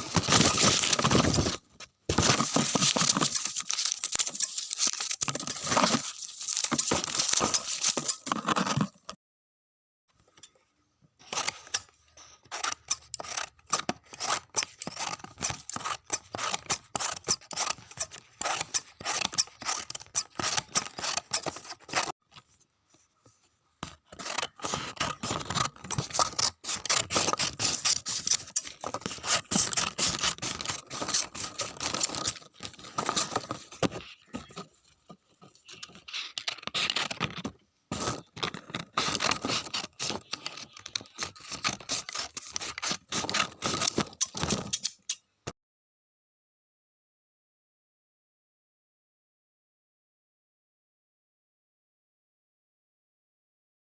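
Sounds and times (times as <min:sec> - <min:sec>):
paper tearing: 0:00.0 - 0:08.9.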